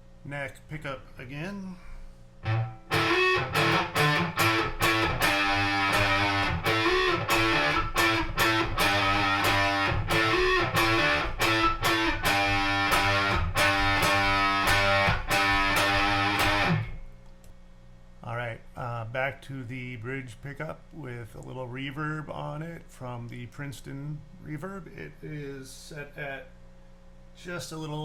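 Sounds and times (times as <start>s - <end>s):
fuzzed electric guitar chords: 2.4s - 17.1s.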